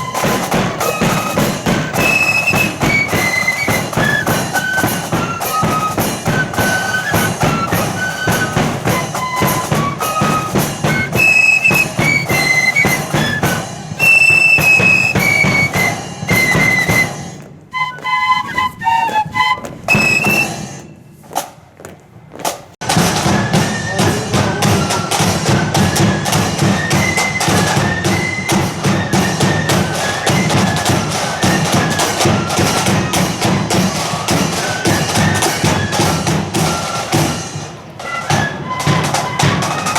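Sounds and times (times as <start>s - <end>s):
bass and side drums: 0.0s - 17.4s, 22.8s - 37.3s
flutes playing a tune: 0.0s - 21.0s, 22.9s - 39.9s.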